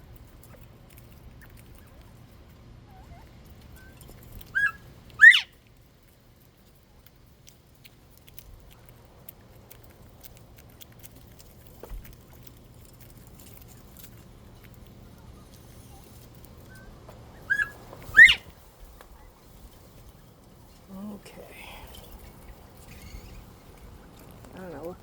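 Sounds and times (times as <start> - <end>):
quail whistling two-note call: 4.6 - 5.5, 17.5 - 18.5.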